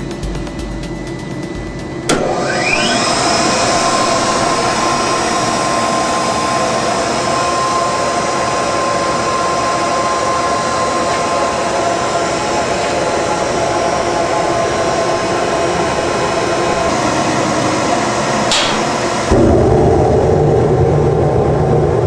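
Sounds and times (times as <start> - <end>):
blower whine rising in pitch: 0.0 - 22.0
furnace roaring with hum: 0.0 - 22.0
furnace click: 18.5 - 19.0.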